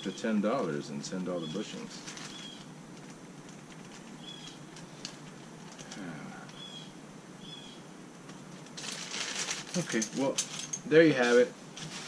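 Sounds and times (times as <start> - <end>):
small bird chirping: 1.3 - 2.7, 4.0 - 5.3, 6.0 - 7.9.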